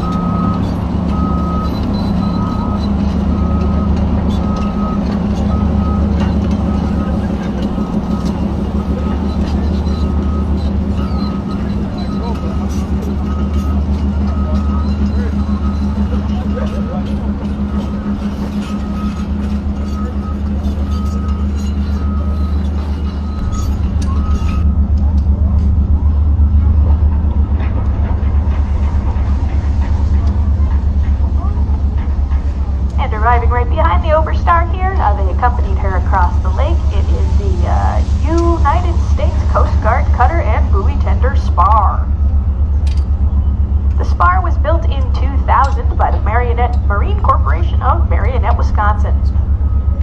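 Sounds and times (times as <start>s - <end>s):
electronic warning beeps: 0.0s - 24.8s, 43.3s - 50.0s
low engine rumble: 0.0s - 50.0s.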